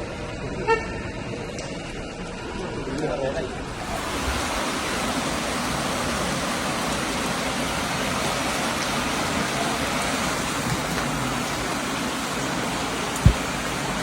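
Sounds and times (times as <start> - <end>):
water rushing: 3.7 - 14.0.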